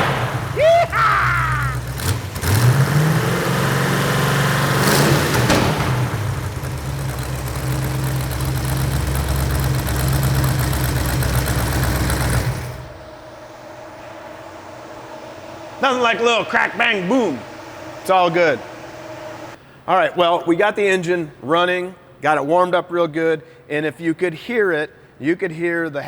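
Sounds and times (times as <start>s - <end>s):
exhaust leaking: 0.0s - 13.4s
car engine running: 0.0s - 16.6s.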